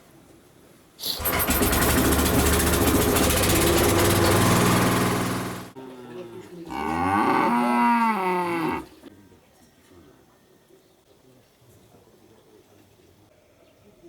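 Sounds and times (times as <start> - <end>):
small engine running: 1.2 - 5.8
cow mooing: 6.7 - 9.0.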